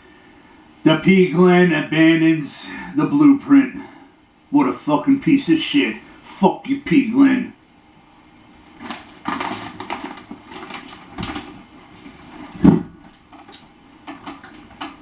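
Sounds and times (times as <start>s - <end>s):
rustling and handling noises: 8.0s - 15.0s.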